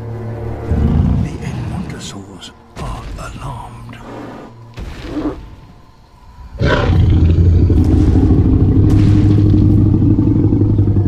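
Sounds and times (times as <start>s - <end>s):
deep dinosaur roar: 6.5s - 11.0s.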